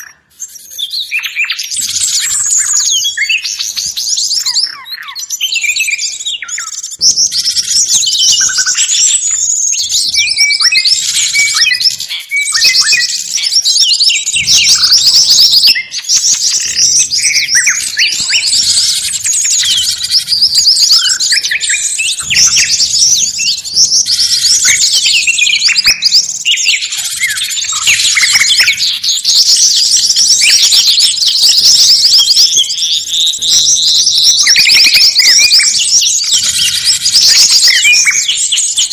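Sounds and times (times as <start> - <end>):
songbirds chirping and twittering: 0.0 - 38.9.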